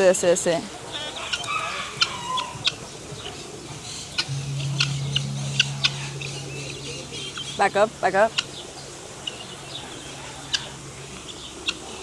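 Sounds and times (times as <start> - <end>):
steady low hum: 4.3 - 8.6.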